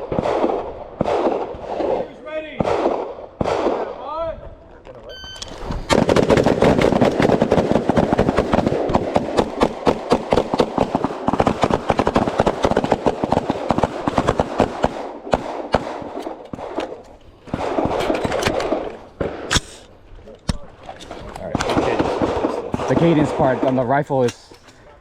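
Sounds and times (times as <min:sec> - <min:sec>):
rapid overlapping gunfire: 0:00.0 - 0:04.0, 0:05.9 - 0:19.6, 0:21.4 - 0:24.2
short electronic beep: 0:05.1 - 0:05.9.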